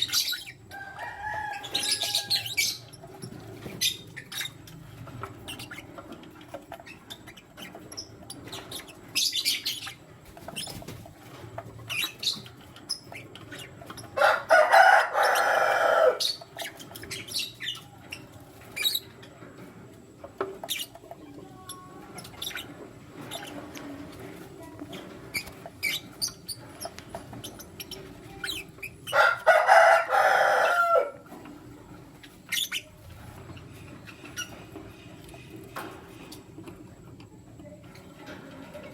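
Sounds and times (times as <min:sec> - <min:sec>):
lovebirds chirping: 0:00.0 - 0:11.0, 0:11.7 - 0:19.4, 0:31.8 - 0:35.5.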